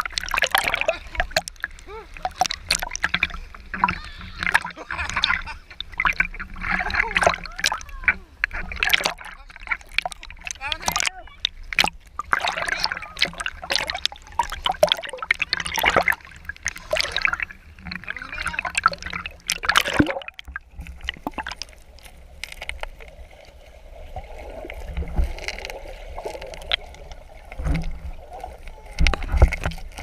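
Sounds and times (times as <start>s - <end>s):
water splashing in a waterfall: 0.0s - 20.4s
running water gurgling: 0.0s - 30.0s.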